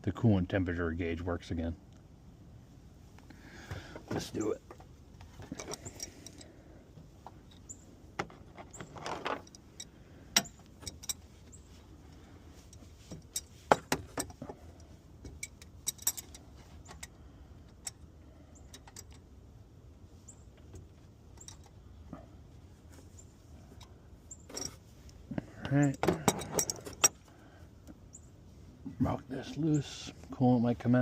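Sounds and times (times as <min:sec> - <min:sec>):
hand tools clinking: 0:04.2 - 0:06.6, 0:07.3 - 0:18.0, 0:21.4 - 0:21.8, 0:23.6 - 0:27.3.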